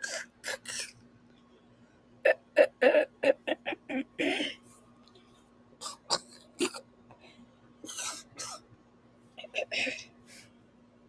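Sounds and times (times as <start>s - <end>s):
girl clearing her throat: 0.0s - 0.9s.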